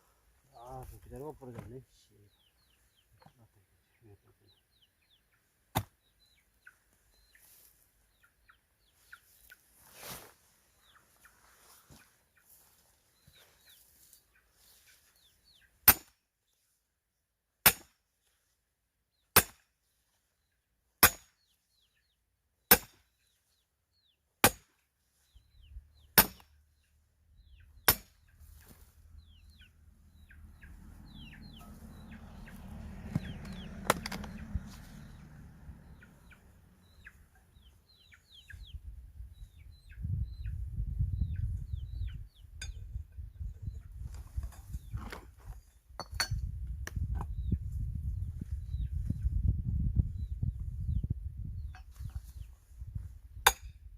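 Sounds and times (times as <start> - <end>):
sharp blows on wood: 26.2 - 26.5.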